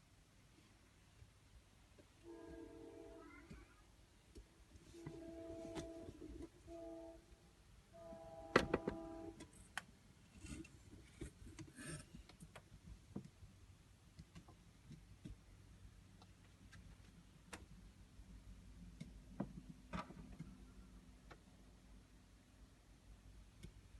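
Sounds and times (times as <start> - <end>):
faint clicks and taps: 9.4 - 13.4, 14.1 - 15.4.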